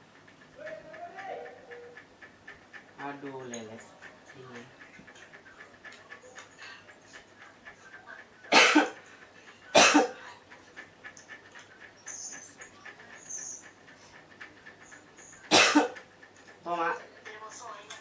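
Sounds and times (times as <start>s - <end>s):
man coughing hard: 8.5s - 9.0s, 9.7s - 10.2s, 15.5s - 16.0s.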